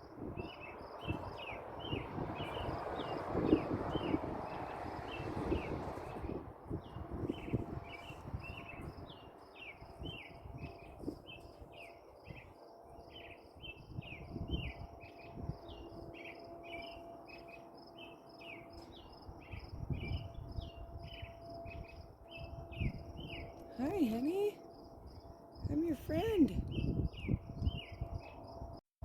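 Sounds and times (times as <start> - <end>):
insects chirping: 7.2 - 23.6.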